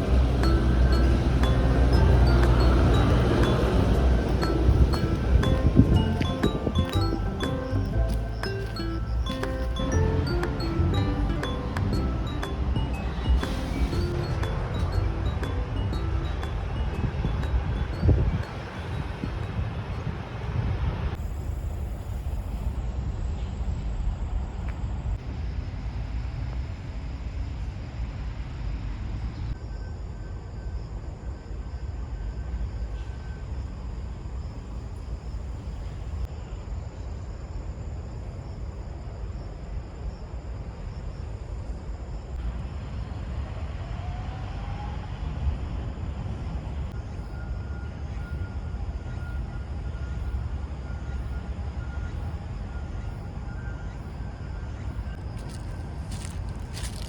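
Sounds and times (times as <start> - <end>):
distant traffic rumble: 0.0 - 21.2, 50.2 - 57.0.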